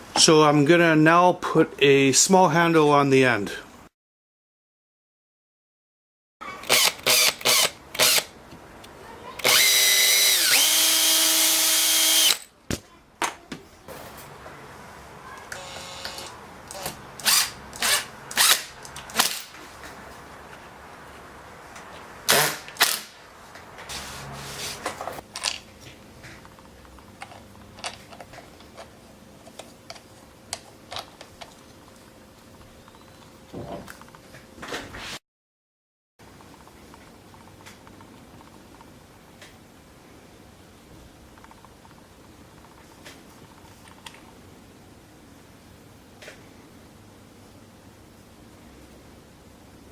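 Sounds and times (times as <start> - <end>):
power drill running: 6.6 - 8.3, 9.4 - 12.4, 15.6 - 16.3.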